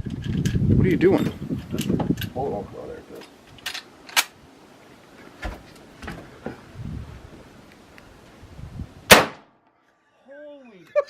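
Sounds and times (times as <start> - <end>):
rifle shot: 9.1 - 9.6.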